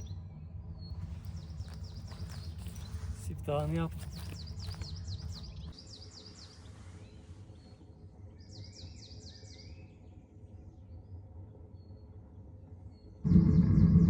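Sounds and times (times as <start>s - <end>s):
small songbird singing: 0.0s - 10.3s.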